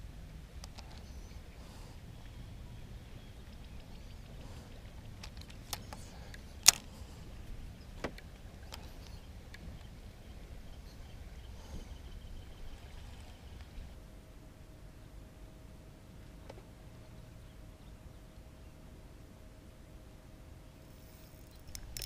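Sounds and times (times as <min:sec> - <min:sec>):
low steady rumble: 0:00.0 - 0:22.0
sharp clicks and knocks: 0:05.2 - 0:07.0, 0:21.4 - 0:22.0.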